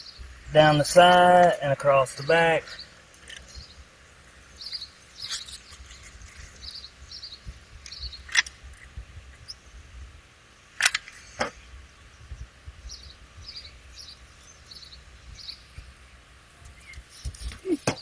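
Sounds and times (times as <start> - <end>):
sharp clicks: 7.8 - 8.9.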